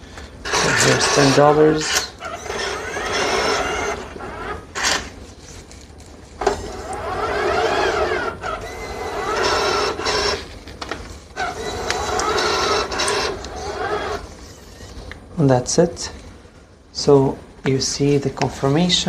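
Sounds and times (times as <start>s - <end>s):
motors whirring: 0.4s - 5.2s, 6.3s - 10.5s, 11.3s - 15.0s
whine rising and falling: 0.4s - 5.4s, 6.3s - 15.5s.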